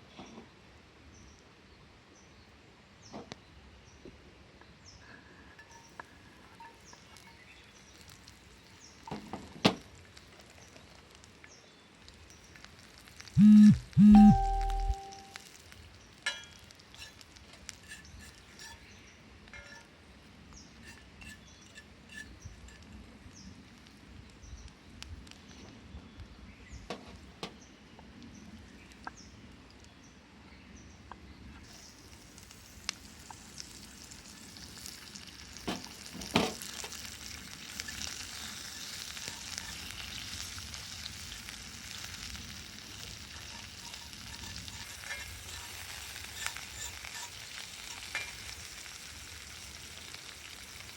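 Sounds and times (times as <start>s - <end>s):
food sizzling in a pan: 5.6s - 13.4s, 14.1s - 25.6s, 31.5s - 50.9s.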